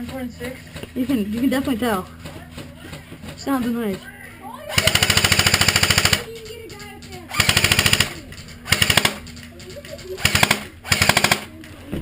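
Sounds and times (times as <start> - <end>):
airsoft gun full-auto bursts: 4.7 - 6.3, 7.3 - 9.4, 10.2 - 11.5.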